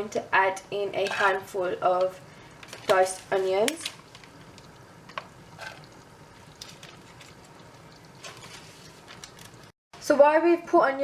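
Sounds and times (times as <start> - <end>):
faint onion sizzle: 0.0 - 9.7.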